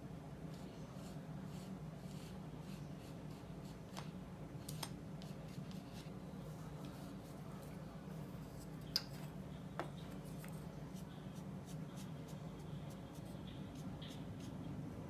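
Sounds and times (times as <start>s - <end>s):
paintbrush scratching on paper: 0.6s - 3.8s, 10.3s - 14.6s.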